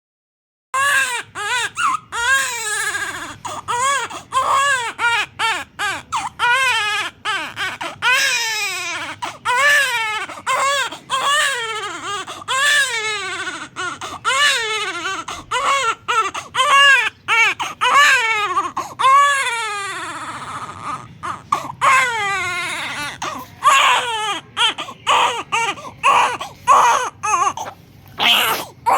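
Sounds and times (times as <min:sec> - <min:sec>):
newborn baby crying: 0:00.8 - 0:28.9.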